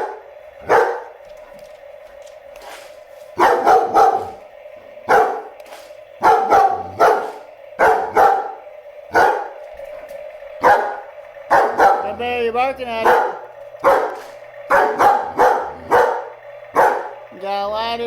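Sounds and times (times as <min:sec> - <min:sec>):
dog barking: 0:00.0 - 0:01.2, 0:03.4 - 0:04.4, 0:05.1 - 0:05.6, 0:06.2 - 0:12.2, 0:13.0 - 0:17.2
faint steady hum: 0:00.0 - 0:18.0.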